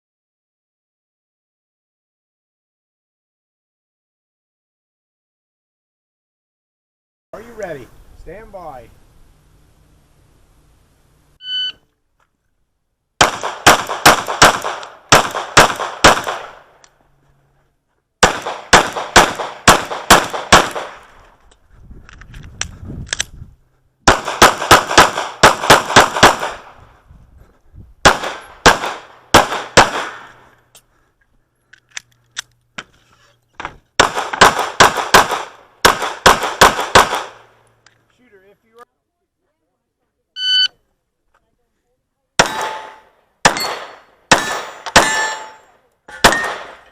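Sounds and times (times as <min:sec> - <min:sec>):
shot timer beep: 0:11.4 - 0:11.8, 0:40.4 - 0:40.7
pistol firing rapid shots: 0:13.2 - 0:16.7, 0:18.2 - 0:21.0, 0:24.1 - 0:26.8, 0:28.0 - 0:30.3, 0:34.0 - 0:37.5, 0:42.4 - 0:45.4, 0:46.2 - 0:46.8.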